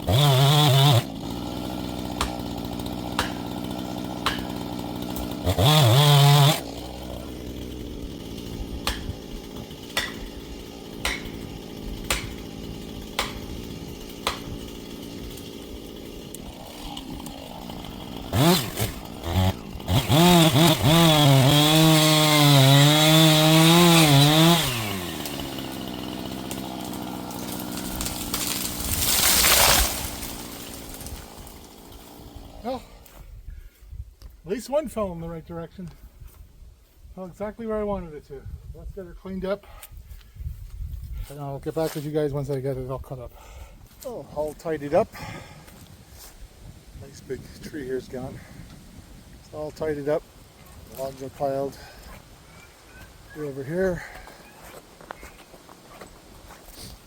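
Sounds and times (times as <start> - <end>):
chainsaw idling and revving: 0.0 - 33.2, 53.2 - 54.5
chainsaw cutting at full throttle: 0.0 - 33.4, 43.3 - 46.4, 47.0 - 54.8.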